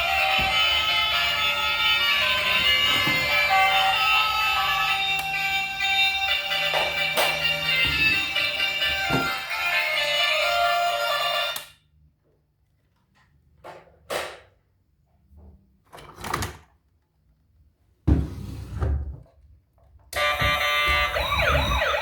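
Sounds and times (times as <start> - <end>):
background music: 0.0 - 11.7.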